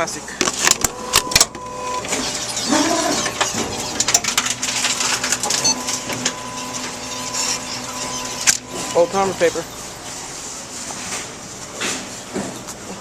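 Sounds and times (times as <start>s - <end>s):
machine motor humming: 0.4s - 10.5s.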